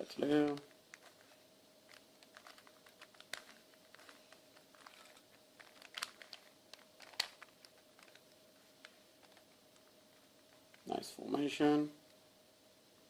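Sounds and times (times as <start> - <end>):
faint steady hum: 0.0 - 13.0
puzzle cube clicking: 1.9 - 9.4.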